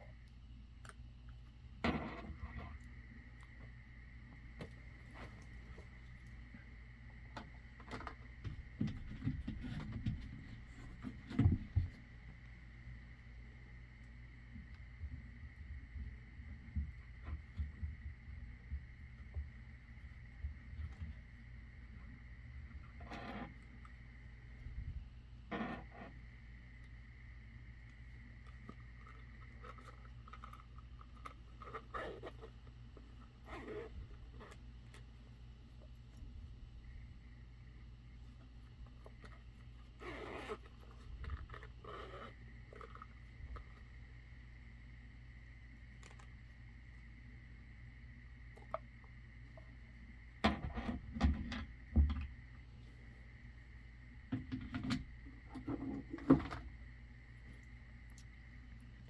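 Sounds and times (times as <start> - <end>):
faint electrical whine: 0.0 - 59.0
steady low hum: 0.0 - 59.0
faint rustles and taps: 0.9 - 12.5.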